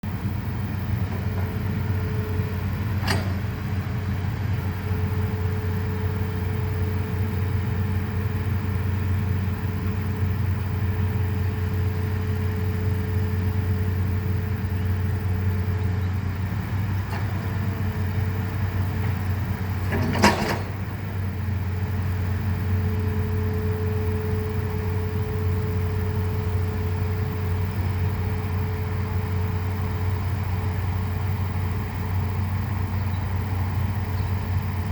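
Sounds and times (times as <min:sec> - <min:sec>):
excavator diesel engine droning: 0:00.0 - 0:34.9
metallic clank: 0:03.0 - 0:03.6, 0:19.8 - 0:20.9.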